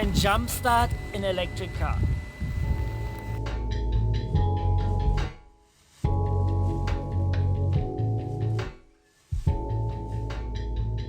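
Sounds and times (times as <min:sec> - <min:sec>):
guitar and bass music with beat: 0:03.4 - 0:11.0.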